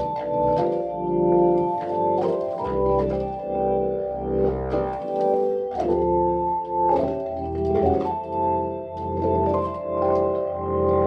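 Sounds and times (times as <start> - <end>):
bass pedal line: 0.0 - 11.0
organ playing held chords: 0.0 - 11.0.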